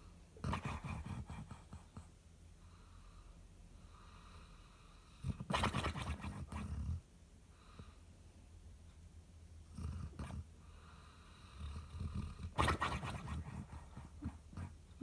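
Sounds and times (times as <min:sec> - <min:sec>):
soft breaths: 0:07.4 - 0:08.4, 0:10.5 - 0:12.4.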